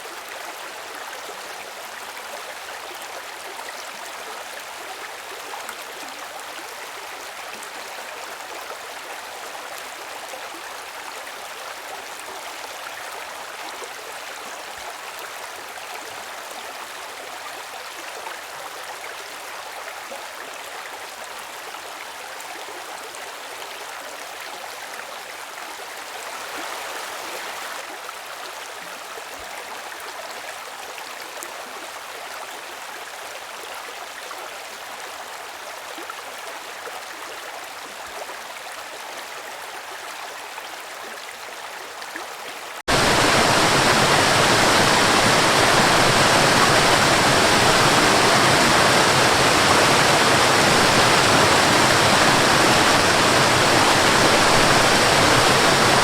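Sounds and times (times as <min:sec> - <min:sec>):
stream water flowing: 0:41.7 - 0:56.0.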